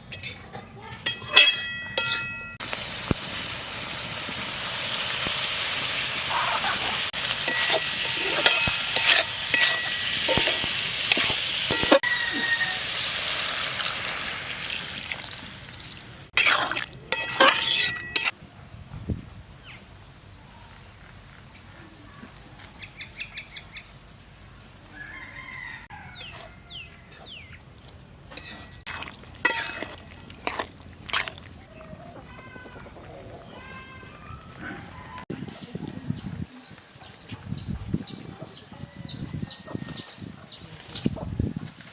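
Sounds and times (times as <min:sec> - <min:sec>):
utensil scraping and clinking on pan: 0:00.0 - 0:02.6, 0:07.1 - 0:12.3, 0:16.4 - 0:18.4, 0:28.3 - 0:31.4
food sizzling in oil: 0:02.0 - 0:18.3, 0:28.4 - 0:30.6
rooster crowing: 0:11.8 - 0:13.3, 0:24.9 - 0:27.0.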